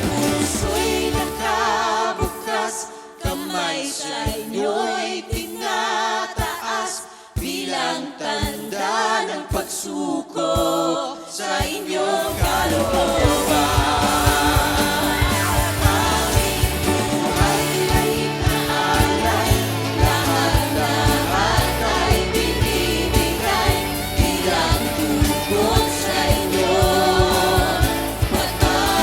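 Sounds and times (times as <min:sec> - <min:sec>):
bass: 0:00.0 - 0:02.0, 0:12.3 - 0:29.0
drum beat: 0:00.0 - 0:02.5, 0:06.4 - 0:06.7, 0:11.6 - 0:29.0
worship band playing: 0:00.0 - 0:06.7, 0:10.5 - 0:29.0
people singing with vibrato: 0:00.0 - 0:29.0.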